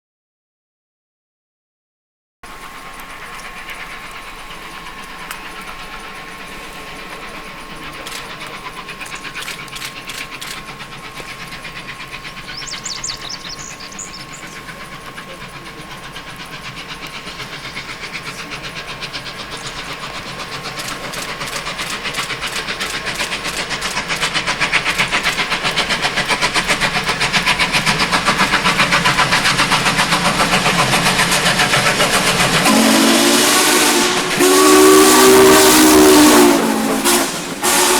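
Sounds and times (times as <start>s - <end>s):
steam locomotive exhaust chuffs: 2.4s - 37.9s.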